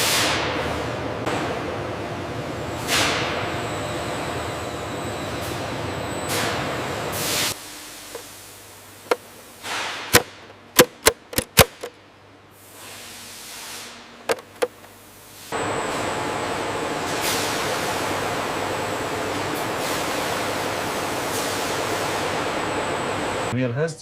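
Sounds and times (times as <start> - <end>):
sharp short knocks: 10.2 - 11.9, 14.3 - 14.9.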